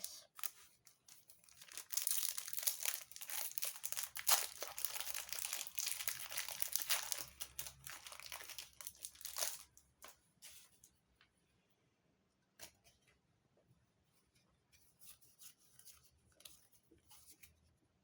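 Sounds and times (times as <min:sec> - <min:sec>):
foil wrapper crinkling and tearing: 0:00.0 - 0:09.8.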